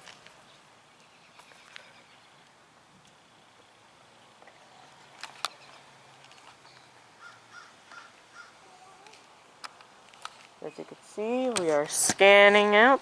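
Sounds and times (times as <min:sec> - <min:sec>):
crow cawing: 0:07.2 - 0:08.6.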